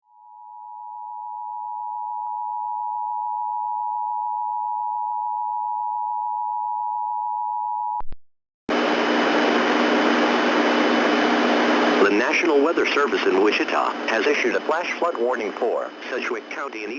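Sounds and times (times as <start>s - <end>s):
static hiss: 8.7s - 16.9s.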